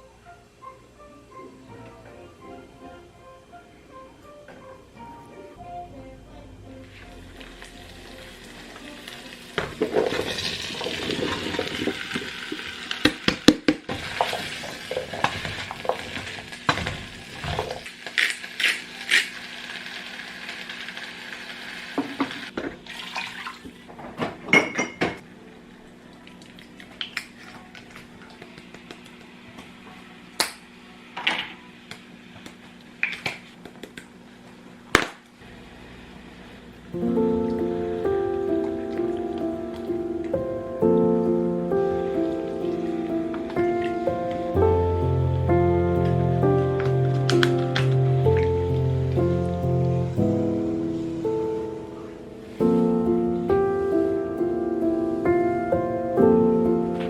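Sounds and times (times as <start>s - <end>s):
dishes and pots clinking: 24.1s - 25.2s.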